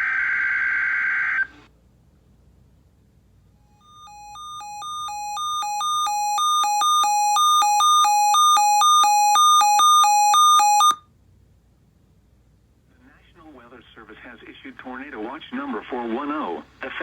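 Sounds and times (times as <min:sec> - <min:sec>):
weather radio alarm beeps: 0:03.8 - 0:11.0.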